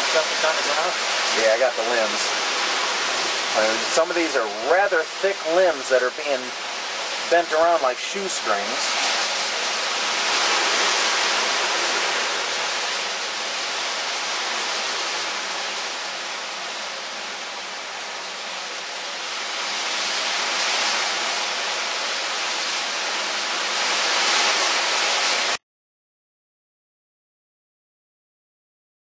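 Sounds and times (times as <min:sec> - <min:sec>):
driving rain: 0:00.0 - 0:25.6
hurricane wind gusting: 0:00.0 - 0:25.6.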